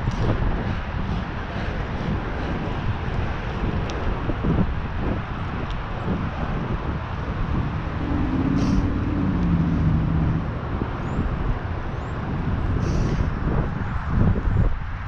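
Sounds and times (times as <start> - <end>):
wind rushing over microphone: 0.0 - 15.0
low steady hum: 6.2 - 12.5.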